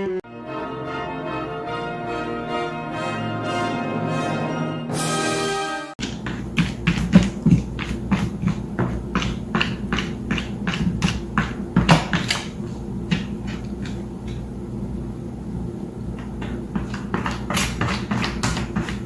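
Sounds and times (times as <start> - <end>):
irregular sharp taps: 6.0 - 14.4.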